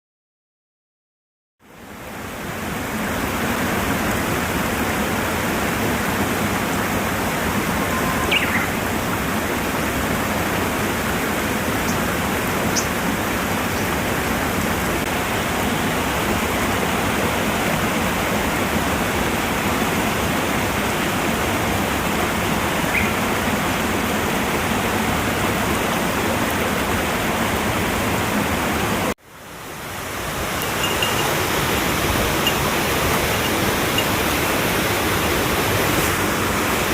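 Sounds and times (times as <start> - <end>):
faint short high chirps: 7.8 - 8.7.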